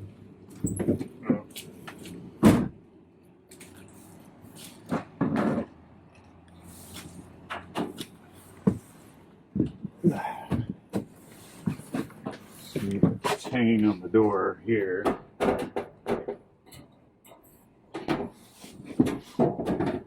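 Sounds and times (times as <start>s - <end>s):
knocks and clunks of water heater: 15.0s - 16.4s, 17.9s - 18.4s, 19.0s - 20.0s.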